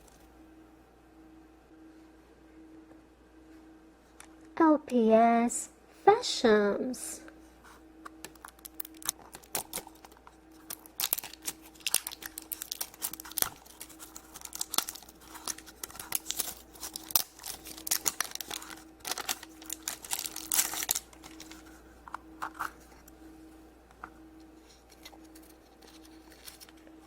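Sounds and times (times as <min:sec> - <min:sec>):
plastic packaging crinkling and tearing: 0:08.2 - 0:23.1, 0:24.6 - 0:27.0.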